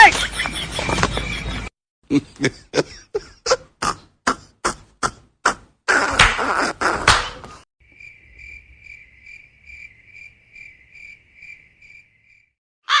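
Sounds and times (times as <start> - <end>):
crickets chirping: 7.8 - 12.6.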